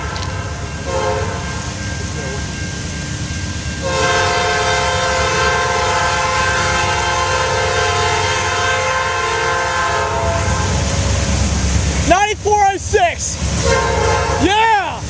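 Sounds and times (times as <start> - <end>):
locomotive air horn blast: 0.0 - 1.5, 3.8 - 10.9, 13.6 - 14.6
diesel locomotive rumble: 0.0 - 15.0.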